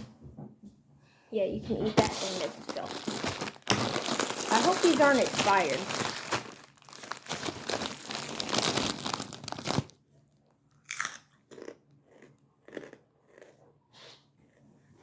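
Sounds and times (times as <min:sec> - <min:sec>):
chip bag rustling: 0:02.0 - 0:10.0
chips being chewed: 0:02.1 - 0:09.9, 0:10.7 - 0:13.6.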